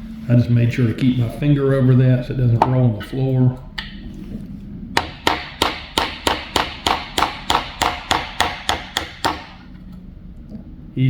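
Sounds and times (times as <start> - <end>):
hammer tapping metal punch: 5.0 - 9.7.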